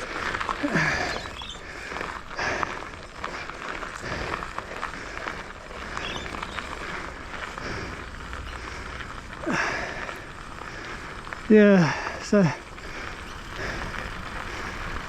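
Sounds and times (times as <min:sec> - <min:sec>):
bike clicks and rattles: 0:00.0 - 0:15.0
bike tyres crunching gravel: 0:00.0 - 0:15.0
wind rumbling on microphone: 0:04.0 - 0:15.0.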